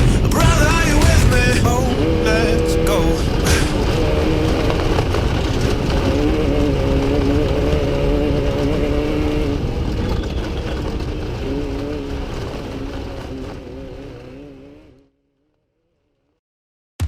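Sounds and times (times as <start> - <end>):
race vehicle engine running: 0.0 - 15.2
low rumble of wind: 1.4 - 15.0.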